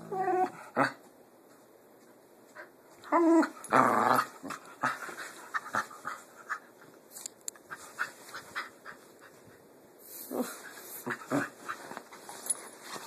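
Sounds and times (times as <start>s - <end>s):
dog growling harshly: 3.4s - 4.9s.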